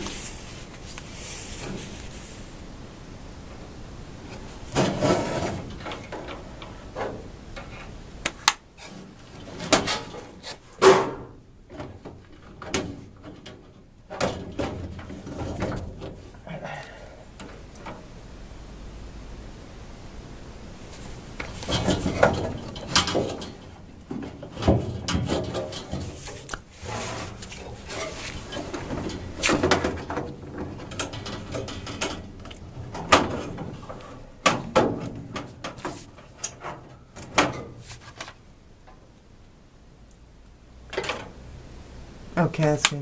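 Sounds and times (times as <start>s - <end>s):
furnace filter knocks and scrapes: 4.6s - 7.8s.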